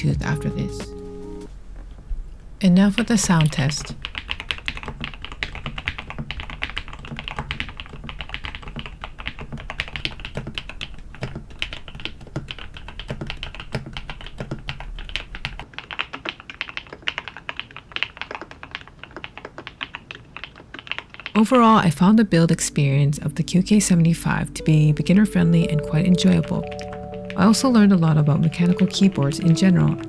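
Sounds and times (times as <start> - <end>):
mechanical keyboard typing: 2.8 - 22.5
faint low hum: 21.4 - 30.0.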